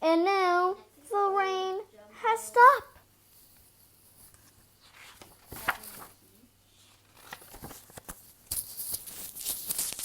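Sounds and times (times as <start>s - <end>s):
book pages turning: 4.3s - 10.0s.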